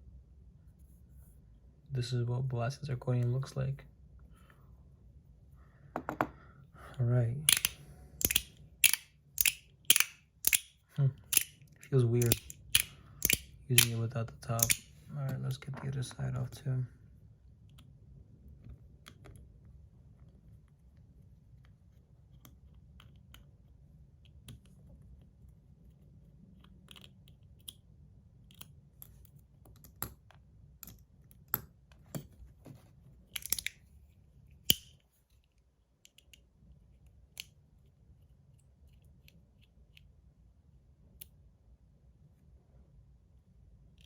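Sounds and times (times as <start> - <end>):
screwdriver and metal parts clicking: 7.5 - 15.0, 33.3 - 33.8.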